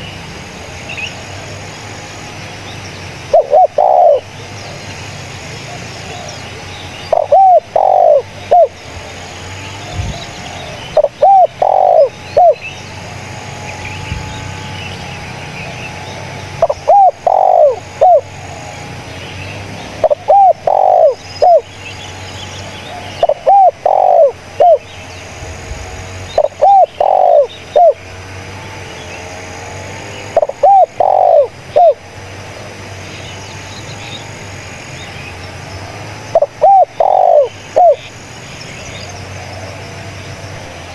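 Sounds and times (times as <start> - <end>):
dove cooing: 3.3 - 4.4, 5.6 - 8.8, 11.0 - 12.7, 16.5 - 18.7, 20.0 - 21.7, 22.9 - 24.9, 26.3 - 28.1, 30.3 - 32.1, 36.3 - 38.1.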